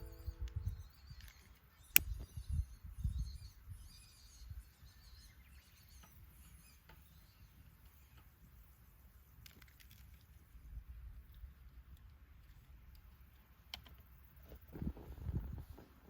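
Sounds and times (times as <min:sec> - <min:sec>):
faint low rumble: 0:00.0 - 0:01.0.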